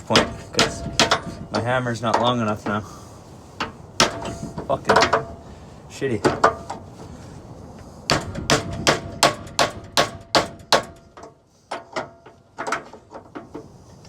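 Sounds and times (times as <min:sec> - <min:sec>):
hammer striking metal: 0:00.0 - 0:02.2, 0:08.1 - 0:11.0.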